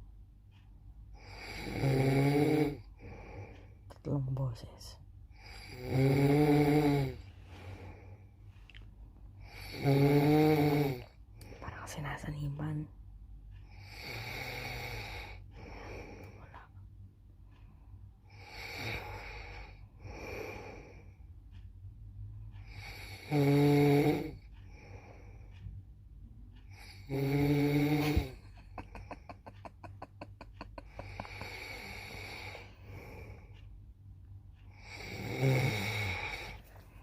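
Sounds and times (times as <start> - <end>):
person snoring: 1.2 - 3.5, 5.4 - 8.0, 9.4 - 11.1, 13.8 - 16.4, 18.3 - 21.0, 22.6 - 25.3, 26.7 - 33.5, 34.7 - 36.7
rattling snore flutter: 26.8 - 28.5.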